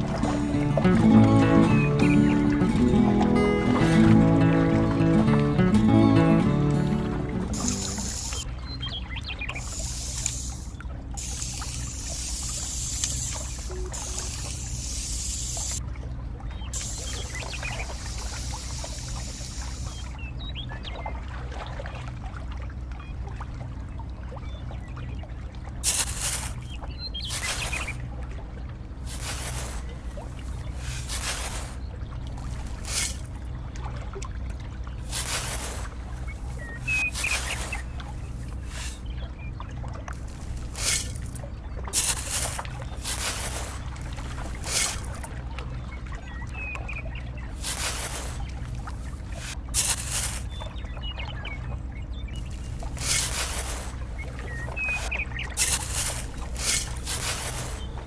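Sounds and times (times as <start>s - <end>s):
engine humming: 0.0s - 15.8s, 16.5s - 20.7s, 25.8s - 33.7s, 34.5s - 58.0s
faint bird chirps: 7.5s - 15.8s, 16.5s - 21.1s, 25.9s - 28.0s, 36.2s - 39.6s, 45.6s - 48.6s, 49.8s - 56.5s
loud hissing bursts: 7.6s - 8.4s, 9.6s - 15.8s, 16.8s - 20.1s, 25.8s - 26.6s
small motor humming: 7.6s - 8.5s, 9.6s - 15.8s, 16.8s - 20.1s.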